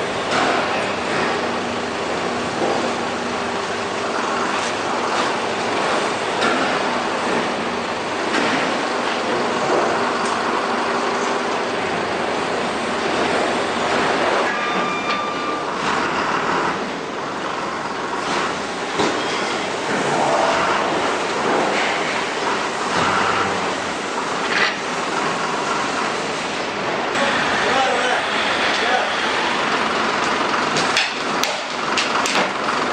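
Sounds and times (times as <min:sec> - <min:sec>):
low engine-like hum: 0:00.0 - 0:32.9
machinery rushing hiss: 0:16.0 - 0:30.4.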